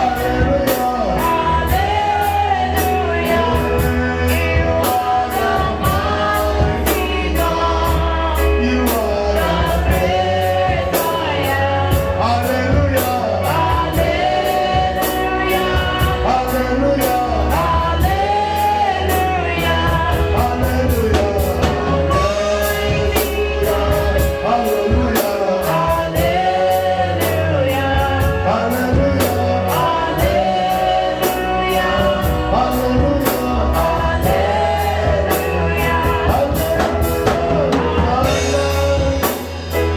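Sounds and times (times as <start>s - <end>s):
band with bass and drums: 0.0s - 39.9s
voices singing: 0.0s - 39.9s.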